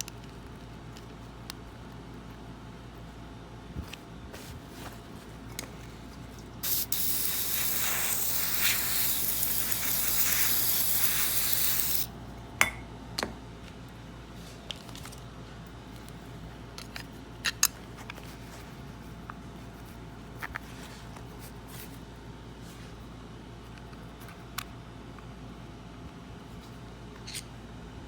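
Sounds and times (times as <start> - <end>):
aerosol can spraying: 6.6 - 12.1.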